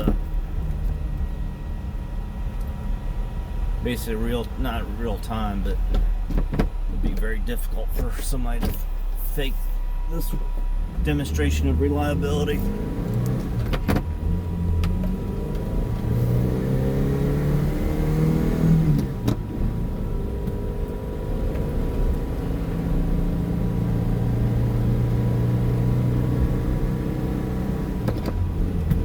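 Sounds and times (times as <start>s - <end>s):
car engine accelerating: 0.0s - 29.0s
gear shift click: 13.1s - 16.1s, 18.9s - 19.5s, 28.0s - 29.0s.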